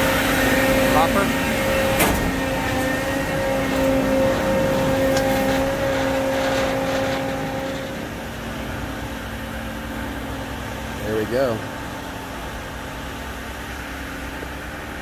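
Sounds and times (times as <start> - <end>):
concrete discharging into hopper: 0.0 - 9.5
diesel truck engines running: 0.0 - 15.0.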